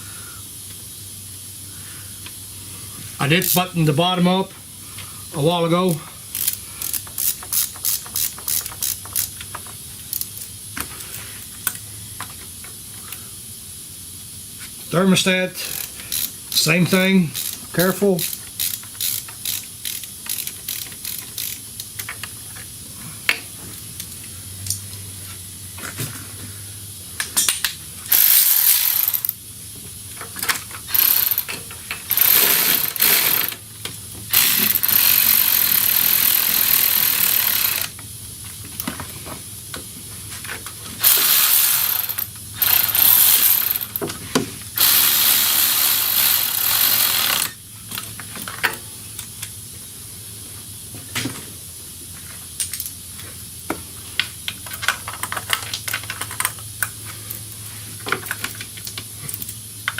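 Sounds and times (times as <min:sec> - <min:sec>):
ratchet wrench turning fasteners: 0:06.3 - 0:11.2, 0:15.6 - 0:22.4, 0:27.4 - 0:29.4, 0:30.2 - 0:33.7, 0:34.3 - 0:38.0, 0:41.0 - 0:44.0, 0:44.7 - 0:47.6.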